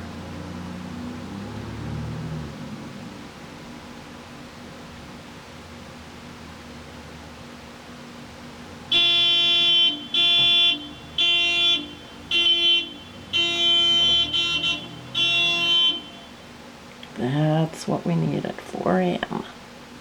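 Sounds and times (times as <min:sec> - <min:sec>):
vehicle horn honking: 0:08.9 - 0:16.4.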